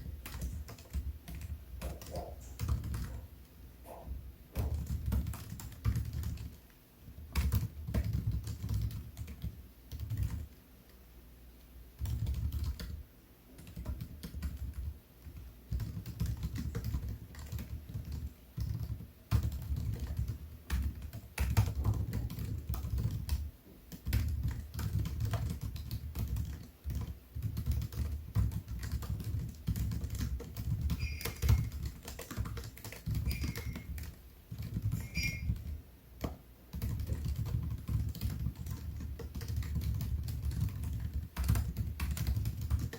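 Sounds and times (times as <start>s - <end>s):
high-pitched squeaks: 31.0s - 31.7s, 33.3s - 33.9s, 35.0s - 35.6s.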